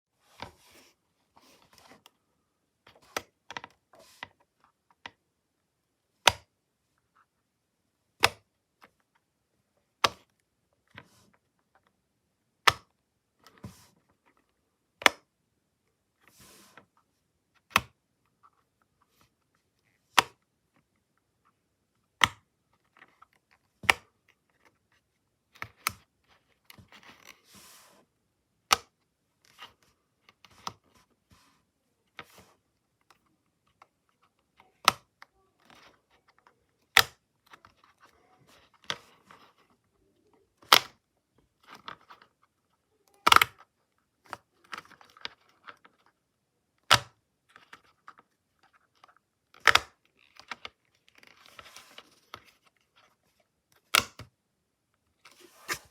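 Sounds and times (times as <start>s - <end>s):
handling rustles: 55.2s - 55.9s.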